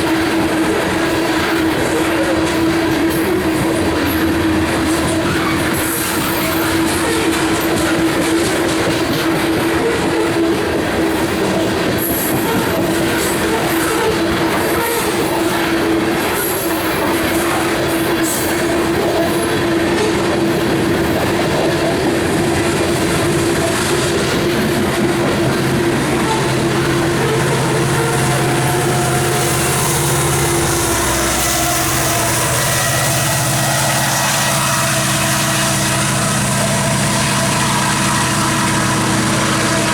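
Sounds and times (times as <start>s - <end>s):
train wheels rumbling on rails: 0.0s - 39.9s
high-pitched wheel squeals: 20.5s - 39.9s.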